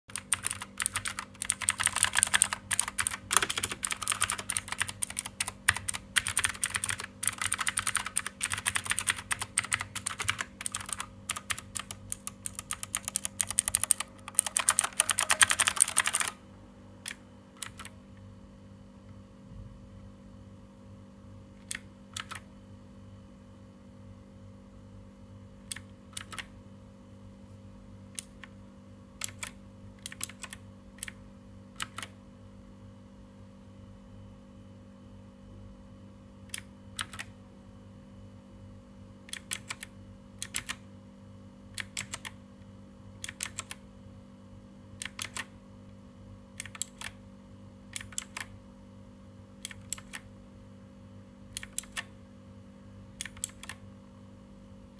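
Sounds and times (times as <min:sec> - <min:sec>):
mechanical keyboard clicks: 0:00.1 - 0:16.4, 0:17.0 - 0:18.0, 0:21.6 - 0:22.4, 0:25.7 - 0:26.5, 0:28.2 - 0:28.6, 0:29.2 - 0:31.2, 0:31.8 - 0:32.2, 0:36.5 - 0:37.3, 0:39.3 - 0:40.8, 0:41.8 - 0:42.4, 0:43.2 - 0:43.8, 0:45.0 - 0:45.5, 0:46.6 - 0:47.2, 0:47.9 - 0:48.5, 0:49.6 - 0:50.3, 0:51.5 - 0:52.1, 0:53.2 - 0:53.8.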